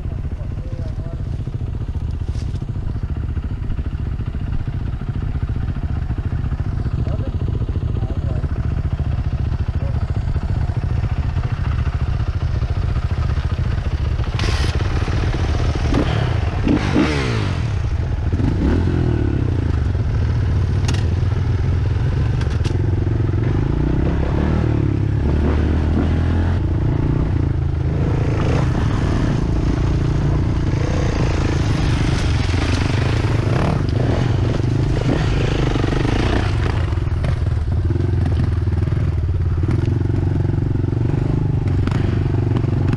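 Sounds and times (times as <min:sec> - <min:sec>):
dirt bike engine revving: 0:14.2 - 0:42.9.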